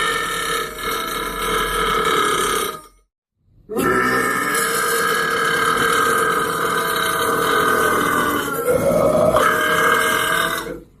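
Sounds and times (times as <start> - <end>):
long burp: 3.7 - 11.0.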